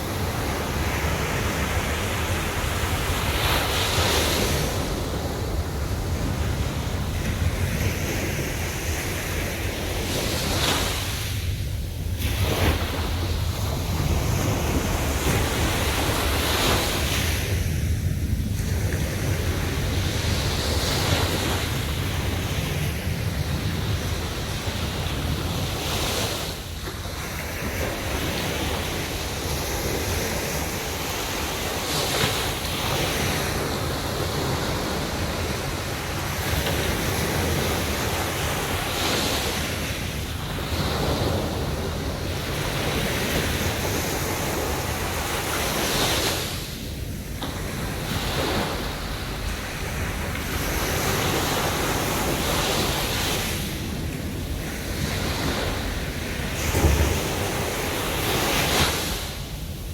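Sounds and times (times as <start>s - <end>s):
sea waves breaking: 0.0s - 18.0s, 18.6s - 59.9s.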